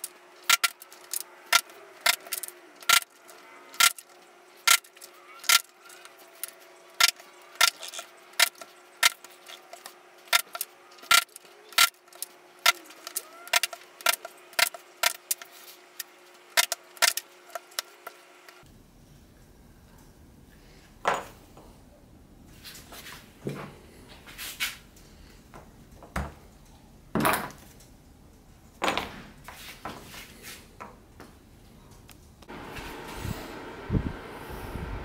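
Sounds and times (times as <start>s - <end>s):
faint steady hum: 0.0s - 35.0s.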